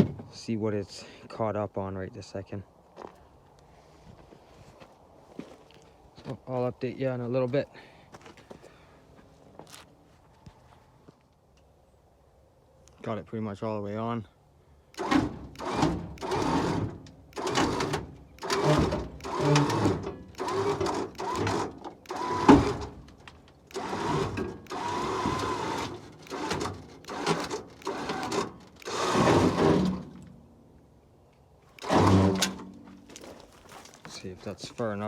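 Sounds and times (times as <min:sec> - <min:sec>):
winch pulling: 0:15.0 - 0:30.3, 0:31.8 - 0:33.3.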